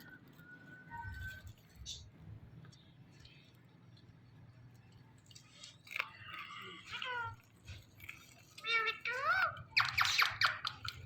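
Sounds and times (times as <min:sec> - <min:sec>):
parrot harsh chattering: 0:08.6 - 0:11.0.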